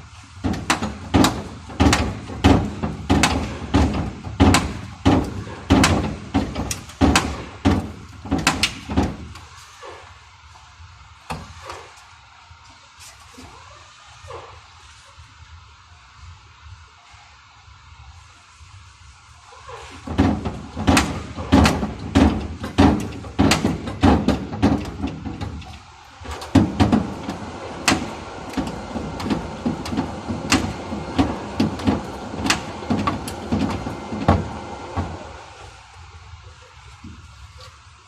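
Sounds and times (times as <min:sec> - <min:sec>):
sharp metallic knocks on car panel: 0:00.4 - 0:09.4, 0:20.2 - 0:25.8.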